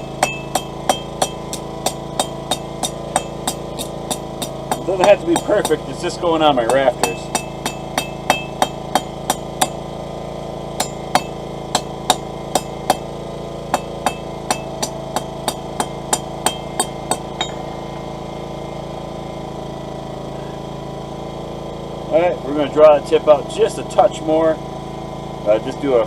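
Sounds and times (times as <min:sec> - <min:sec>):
hammer tapping steel on anvil: 0:00.0 - 0:05.8, 0:06.6 - 0:09.8, 0:10.8 - 0:13.1, 0:13.7 - 0:17.8
steady hum: 0:00.0 - 0:26.0.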